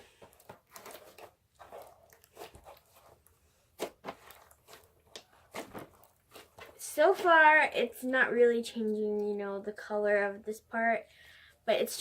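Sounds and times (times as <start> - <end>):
slime squishing and crackling: 0.1 - 8.0.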